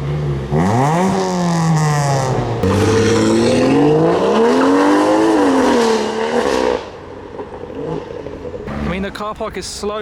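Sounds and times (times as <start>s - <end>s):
car engine revving past: 0.5s - 6.9s.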